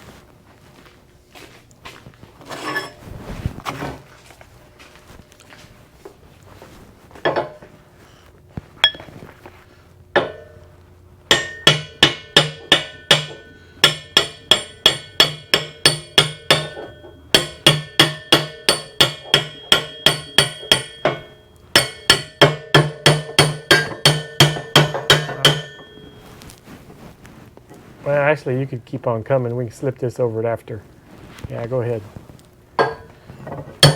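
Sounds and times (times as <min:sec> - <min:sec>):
hammer striking steel: 0:08.8 - 0:09.1, 0:10.2 - 0:10.7, 0:11.3 - 0:26.2, 0:32.8 - 0:33.1.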